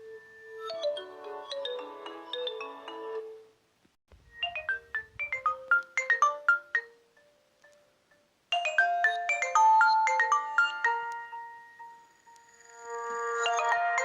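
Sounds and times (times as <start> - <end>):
mobile phone ringtone melody: 8.1 - 14.0.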